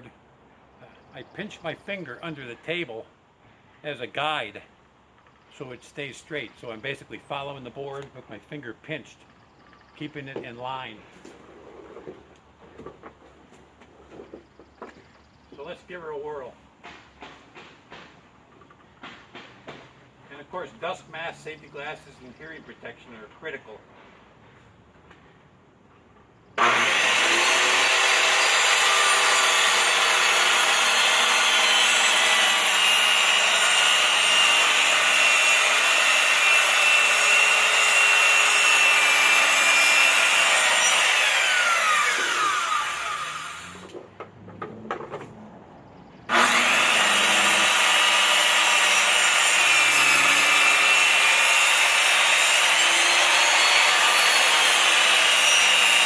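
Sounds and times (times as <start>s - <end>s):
circular saw cutting wood: 26.6s - 44.0s, 46.3s - 56.0s.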